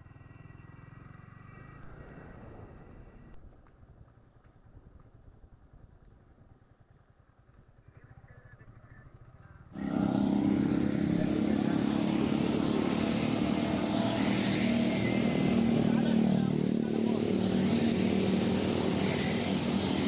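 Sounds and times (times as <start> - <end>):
motorcycle engine running: 0.0 - 3.4, 6.2 - 20.0
faint low rumble: 0.0 - 9.8.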